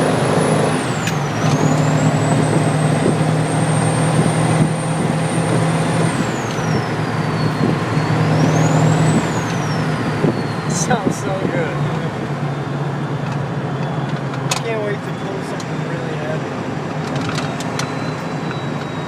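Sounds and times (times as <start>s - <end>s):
diesel engine drone: 0.0s - 19.0s
turbo whistling: 0.4s - 11.1s, 13.6s - 14.3s, 17.4s - 19.0s.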